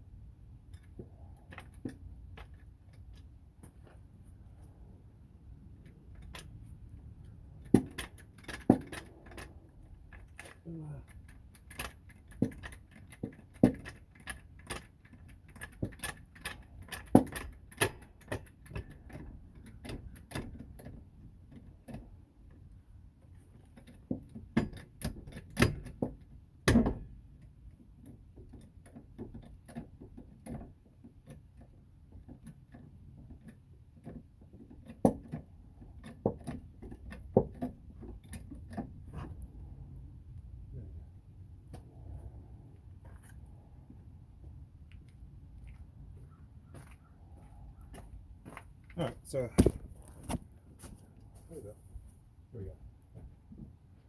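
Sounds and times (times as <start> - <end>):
hand tools and lug nuts clinking: 5.7 - 39.4.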